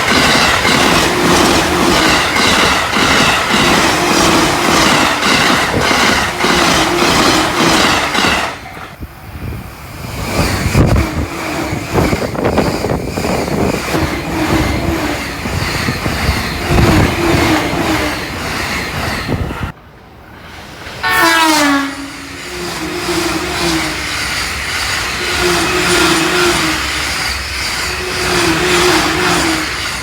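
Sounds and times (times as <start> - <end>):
train wheels clattering over rail joints: 0.0 - 9.0, 9.8 - 19.8, 22.1 - 30.0
train rushing past with low thumps: 0.0 - 30.0.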